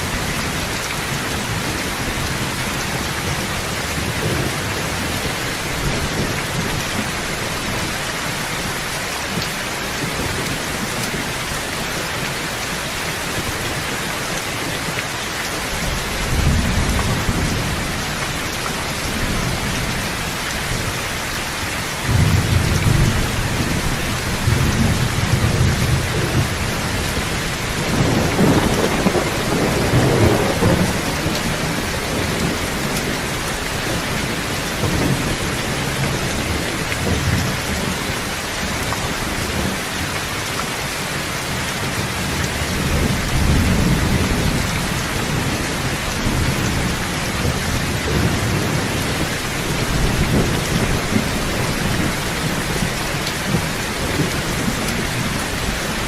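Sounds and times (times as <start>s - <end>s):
heavy rain: 0.0s - 56.0s
rolling thunder: 22.0s - 38.2s.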